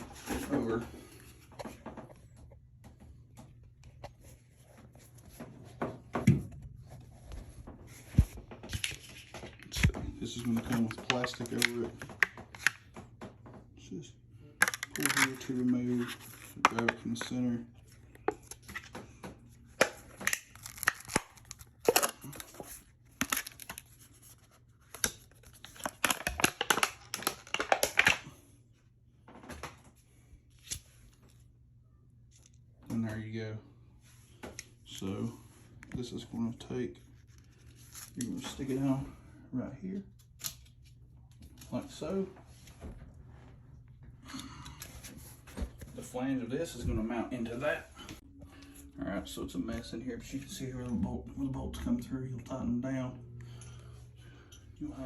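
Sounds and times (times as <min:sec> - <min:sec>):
plastic cover crinkling: 0:14.6 - 0:17.4, 0:19.8 - 0:28.3.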